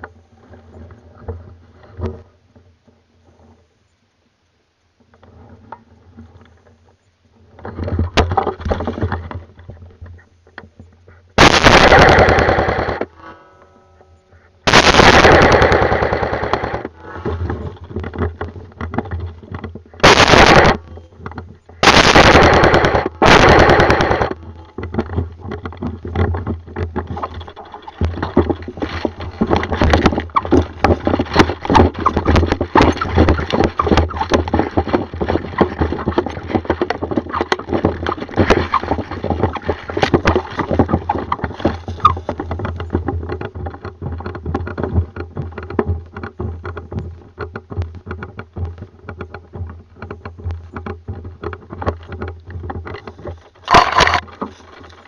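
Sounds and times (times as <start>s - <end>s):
airsoft guns firing bursts: 11.4s - 13.1s, 14.7s - 16.9s, 20.0s - 20.8s, 21.8s - 24.4s.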